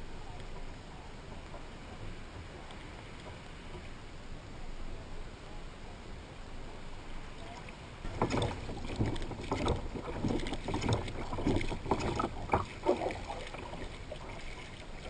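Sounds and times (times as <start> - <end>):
water splashing against boat: 0.0 - 5.4, 6.0 - 15.0
wind on microphone: 0.0 - 15.0
boat knocking: 8.0 - 15.0.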